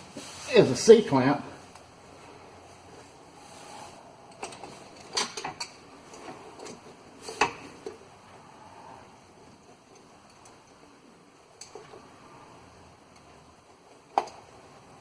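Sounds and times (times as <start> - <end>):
metal clamp clinks and clanks: 4.3 - 8.0.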